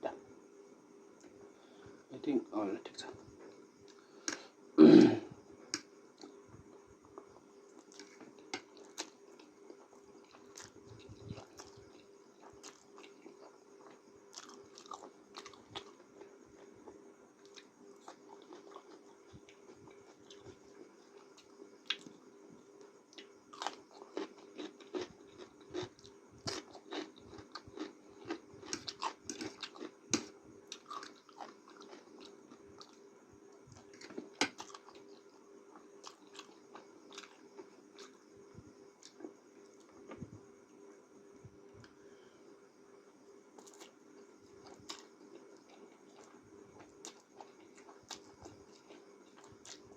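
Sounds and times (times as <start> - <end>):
faint steady hum: 0.0 - 49.9
chewing with wet mouth clicks: 23.1 - 33.0, 44.6 - 49.9.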